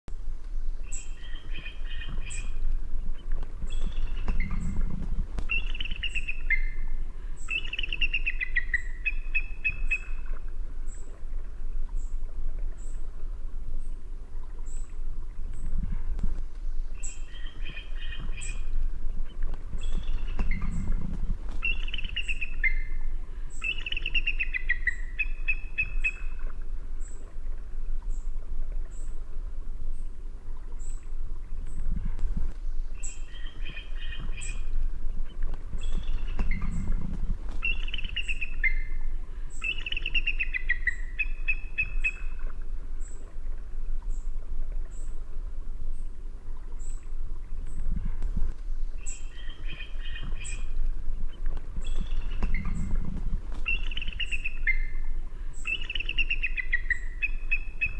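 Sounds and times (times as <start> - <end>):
low background rumble: 0.1 - 7.6, 12.2 - 25.2, 26.4 - 57.9
eagle calling: 1.2 - 9.8, 17.1 - 26.2, 31.9 - 42.2, 47.9 - 57.9.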